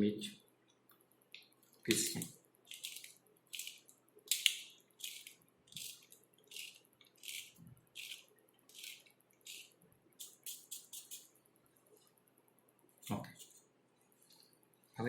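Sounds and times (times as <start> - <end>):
pepper mill grinding: 1.9 - 11.3.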